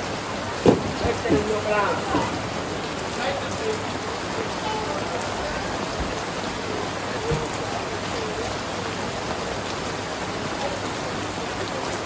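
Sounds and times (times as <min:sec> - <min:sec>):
rain on hard surfaces: 0:00.0 - 0:12.0.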